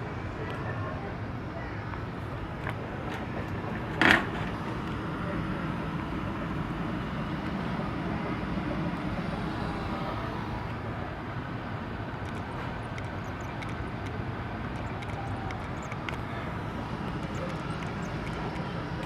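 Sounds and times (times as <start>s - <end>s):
air handler blower whooshing: 2.0s - 10.8s.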